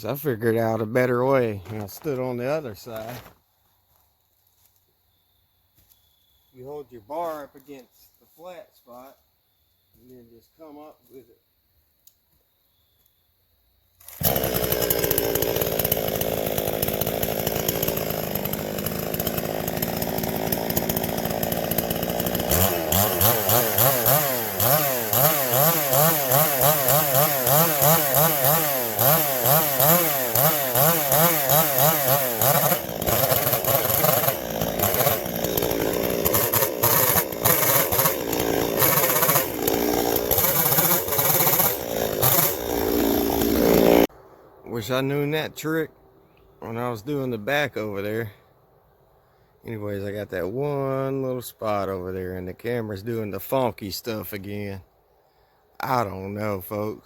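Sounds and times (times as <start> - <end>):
chainsaw cutting wood: 14.0 - 44.1.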